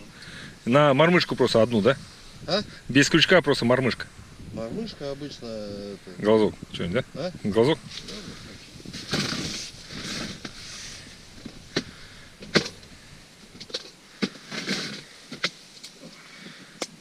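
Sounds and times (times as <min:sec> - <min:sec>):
soft rustling: 0:06.6 - 0:16.8.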